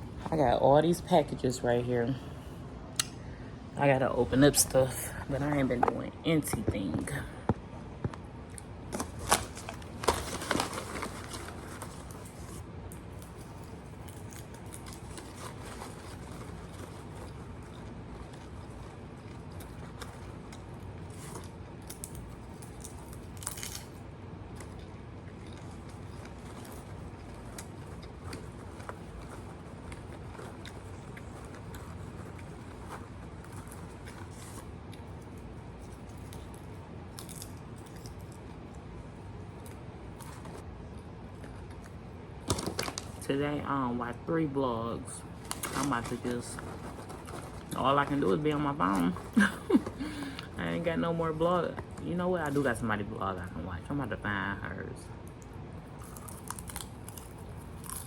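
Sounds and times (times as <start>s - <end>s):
rustling and clicking handling: 8.9s - 23.8s, 24.5s - 36.7s, 45.3s - 50.6s.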